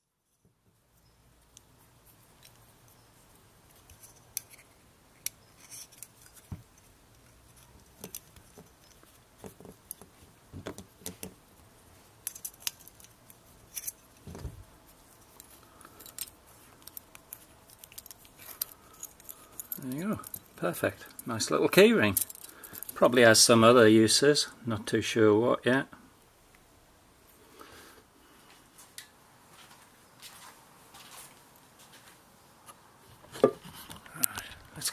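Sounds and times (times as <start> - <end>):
metallic clicks and clinks: 12.2 - 14.2, 15.3 - 23.0
keys jangling: 16.0 - 21.3, 22.1 - 23.0.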